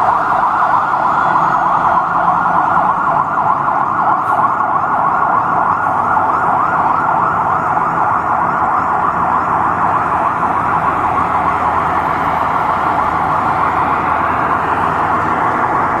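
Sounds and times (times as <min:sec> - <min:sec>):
fire engine siren warbling: 0:00.0 - 0:16.0
street traffic rumble: 0:00.0 - 0:16.0.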